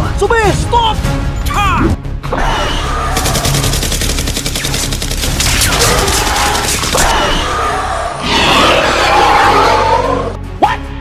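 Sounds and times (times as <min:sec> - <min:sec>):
background music: 0:00.0 - 0:11.0
automatic gunfire: 0:03.2 - 0:07.0.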